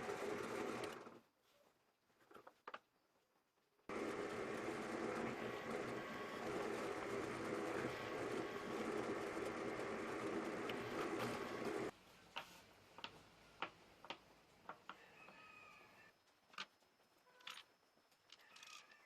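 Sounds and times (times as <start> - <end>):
electric drill running: 3.9 - 11.9.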